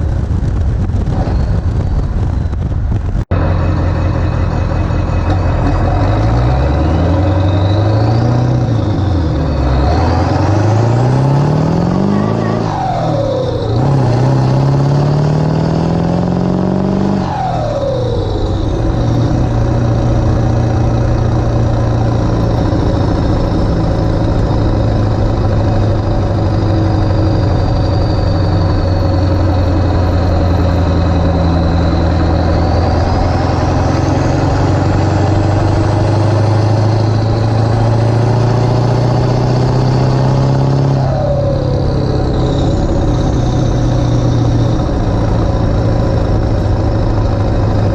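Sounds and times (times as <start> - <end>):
diesel engine driving under load: 0.0 - 47.9
faint high whistle: 12.0 - 13.7.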